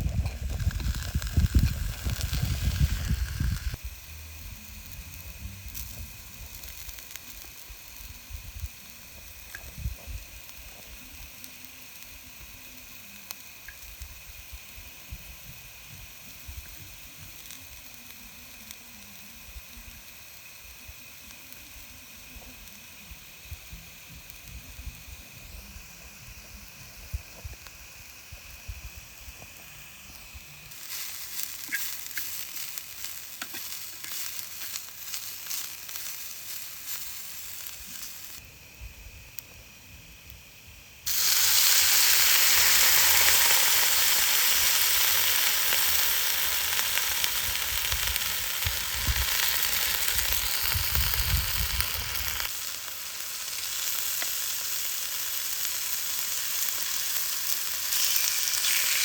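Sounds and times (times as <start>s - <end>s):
food sizzling in a pan: 0.0s - 59.0s.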